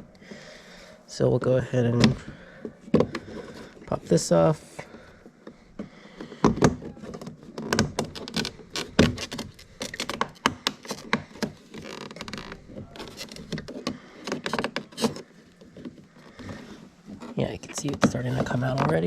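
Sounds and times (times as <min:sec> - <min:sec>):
plastic trim scraping: 0:01.9 - 0:19.0.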